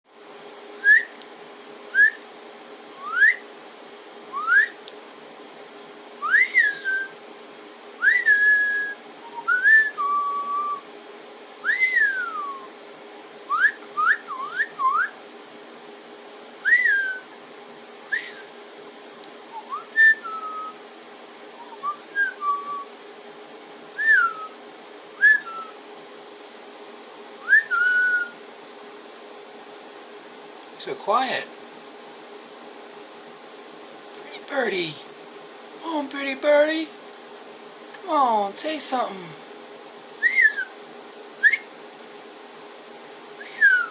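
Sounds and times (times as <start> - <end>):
faint steady hum: 0.1 - 43.9
person whistling: 40.2 - 40.7, 43.4 - 43.9.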